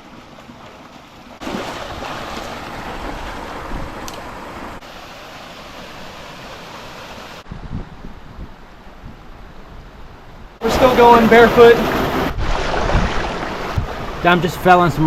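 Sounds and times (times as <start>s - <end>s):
creek water rushing over rocks: 0.0s - 7.5s, 10.6s - 15.0s.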